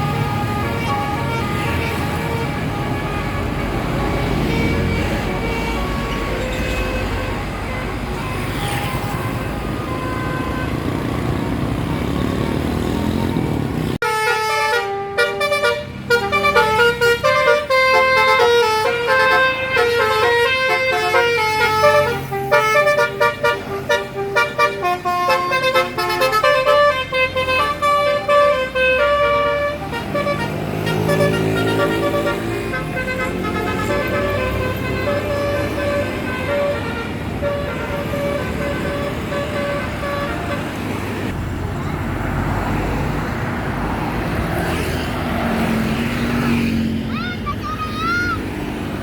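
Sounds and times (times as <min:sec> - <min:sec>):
bus musical horn melody: 0:00.0 - 0:11.2, 0:14.0 - 0:41.3
road and engine noise: 0:00.0 - 0:49.0.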